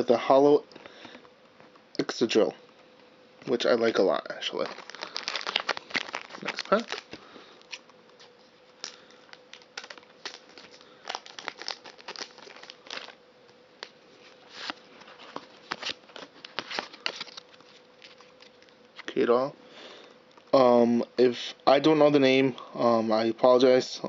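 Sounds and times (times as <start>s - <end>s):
foil wrapper crinkling and tearing: 4.3s - 13.2s, 13.8s - 18.7s
cards rustling: 4.4s - 13.2s, 13.8s - 19.2s.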